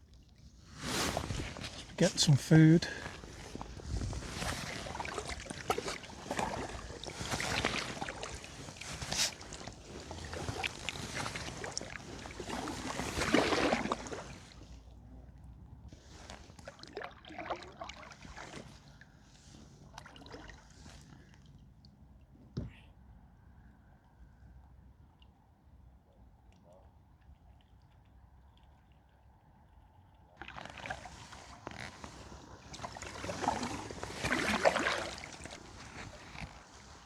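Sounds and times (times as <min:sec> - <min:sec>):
paddle strokes splashing water: 0:00.5 - 0:14.9, 0:16.0 - 0:21.3, 0:30.4 - 0:37.0.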